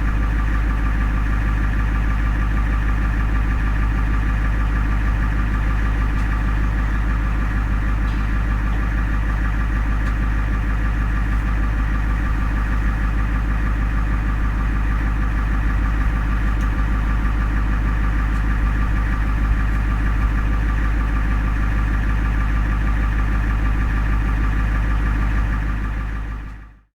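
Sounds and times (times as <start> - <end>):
ambulance engine idling: 0.0 - 26.9.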